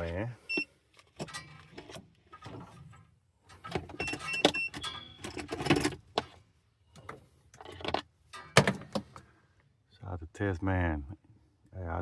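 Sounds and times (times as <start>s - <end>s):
handling clicks and rustling: 0.0s - 9.3s.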